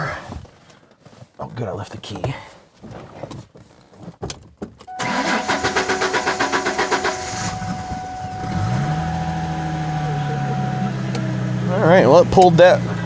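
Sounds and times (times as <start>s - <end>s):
steady high tone: 4.9s - 11.8s
car engine cranking on starter: 4.9s - 13.0s
car engine revving and idling: 4.9s - 13.0s.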